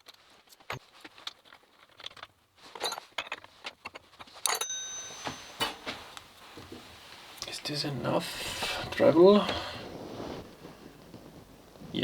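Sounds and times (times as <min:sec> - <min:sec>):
metal tools clinking: 0:02.1 - 0:06.8.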